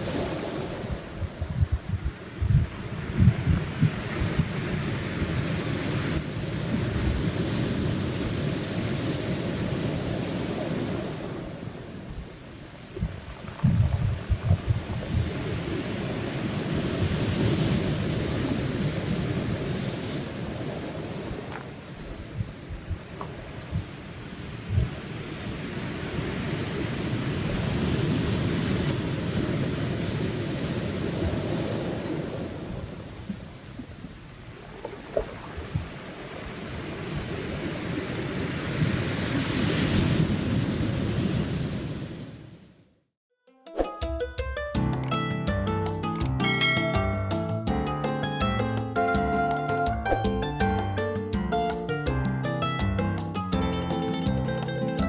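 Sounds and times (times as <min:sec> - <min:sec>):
sea waves washing against rocks: 0:00.0 - 0:42.4
wind rumbling on microphone: 0:00.0 - 0:42.7.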